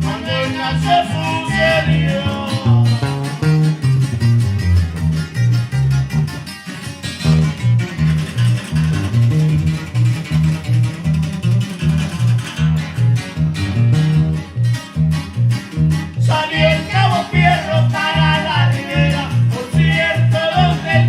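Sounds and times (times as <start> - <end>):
bass line: 0.0 - 21.0
guitar picking melody: 0.0 - 21.0.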